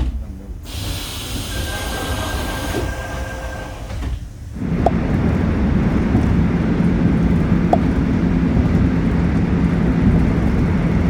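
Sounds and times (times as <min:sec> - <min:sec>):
subway car rumble: 0:00.0 - 0:11.0
low hum: 0:04.4 - 0:11.0.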